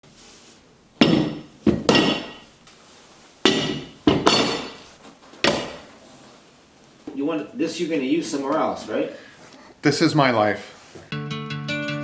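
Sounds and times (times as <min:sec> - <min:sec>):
hammer striking metal: 0:01.0 - 0:02.4, 0:03.4 - 0:04.8, 0:05.4 - 0:05.8.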